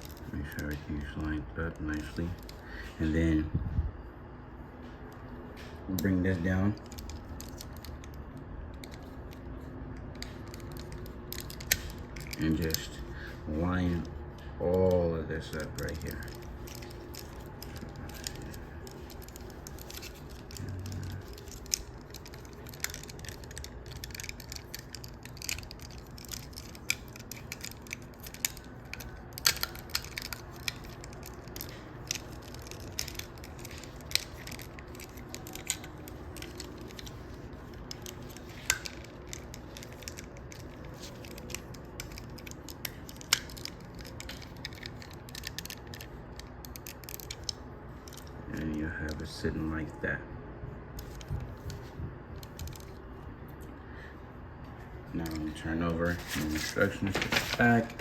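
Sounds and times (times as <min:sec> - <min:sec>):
plastic toy parts clicking: 0:06.7 - 0:09.4, 0:10.1 - 0:13.0, 0:15.4 - 0:48.7.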